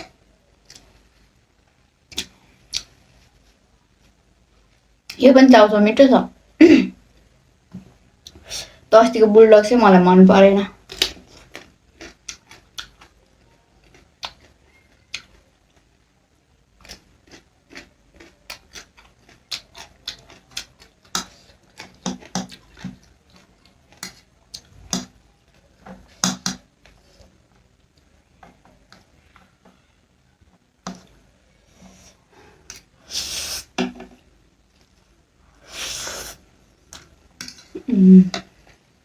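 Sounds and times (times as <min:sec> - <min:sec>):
chewing and mouth smacks: 0:10.9 - 0:13.2, 0:13.8 - 0:15.4, 0:16.8 - 0:25.0.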